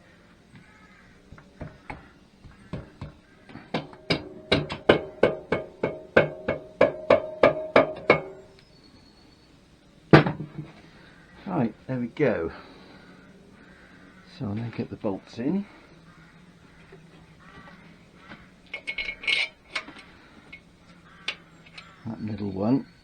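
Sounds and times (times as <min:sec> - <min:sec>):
tapping on metal cylinder head: 0:01.3 - 0:08.5, 0:10.2 - 0:10.7
loud knock: 0:03.8 - 0:08.4.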